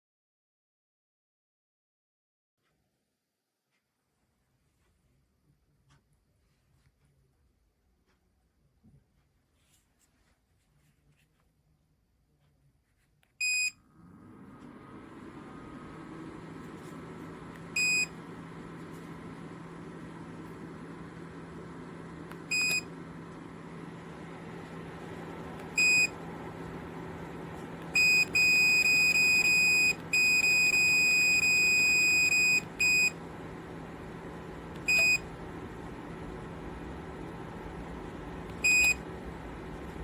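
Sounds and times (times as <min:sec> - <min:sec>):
heater fan humming: 0:13.8 - 0:40.0.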